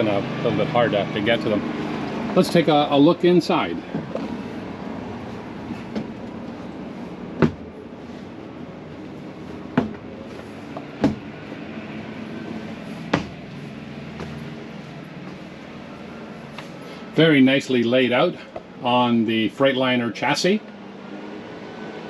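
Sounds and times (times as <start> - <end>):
sharp knocks: 7.4 - 7.7, 9.7 - 10.1, 10.7 - 11.3, 13.1 - 13.4.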